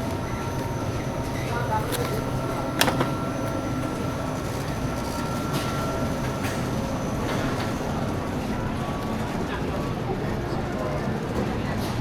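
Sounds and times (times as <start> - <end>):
shopping cart wheels rattling: 0.1 - 8.4
shopping cart clanks: 0.3 - 8.2.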